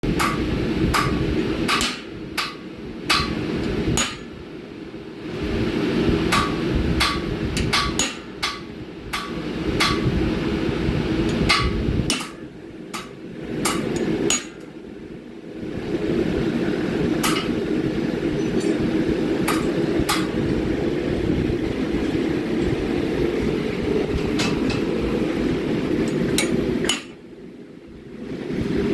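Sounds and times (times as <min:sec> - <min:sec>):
steady rushing noise: 0:00.0 - 0:28.9
hammer striking metal on anvil: 0:00.2 - 0:03.4, 0:04.0 - 0:04.3, 0:06.3 - 0:10.1, 0:11.3 - 0:14.7, 0:17.2 - 0:17.6, 0:18.4 - 0:20.4, 0:26.1 - 0:27.2.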